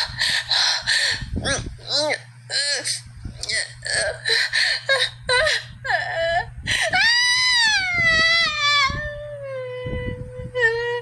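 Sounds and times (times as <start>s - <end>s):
person crying and sobbing: 0.0s - 11.0s.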